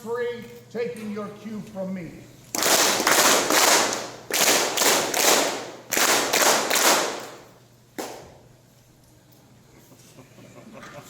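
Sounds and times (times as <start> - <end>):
group clapping in unison: 2.5 - 8.3.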